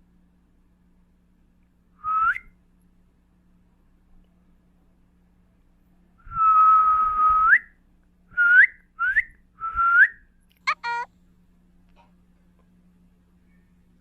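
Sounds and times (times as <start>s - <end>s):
cat chirping: 10.7s - 11.1s.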